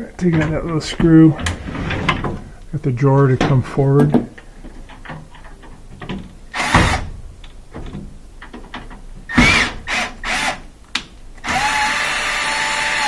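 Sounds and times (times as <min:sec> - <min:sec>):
cordless drill spinning: 0:09.4 - 0:10.6, 0:11.4 - 0:13.0.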